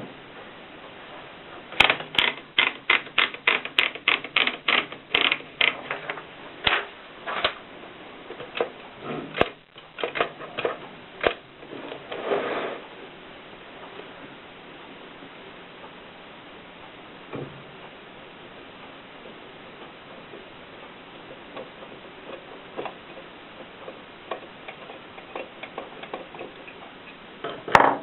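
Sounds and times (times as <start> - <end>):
typewriter clicking: 1.8 - 5.8.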